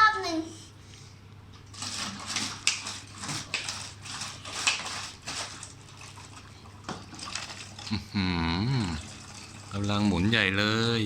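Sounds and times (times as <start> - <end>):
water gurgling through bottles: 4.6 - 10.8.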